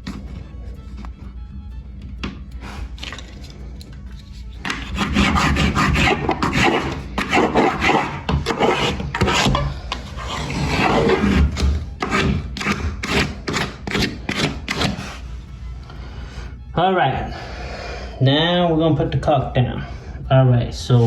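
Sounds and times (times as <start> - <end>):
metal blade scraping caulk: 2.6 - 15.3.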